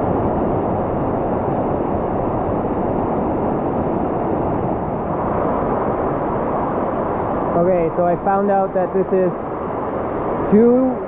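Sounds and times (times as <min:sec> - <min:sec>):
waterfall roar: 0:00.0 - 0:11.0.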